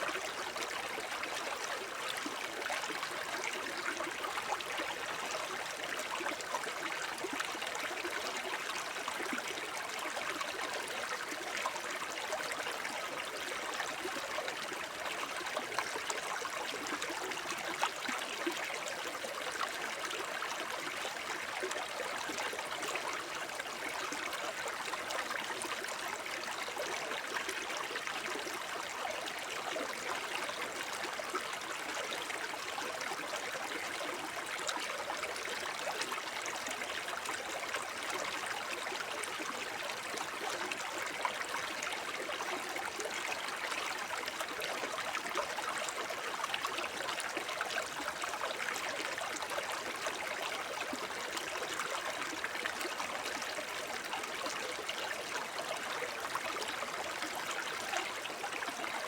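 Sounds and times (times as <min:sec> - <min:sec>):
brook babbling over stones: 0:00.0 - 0:59.0.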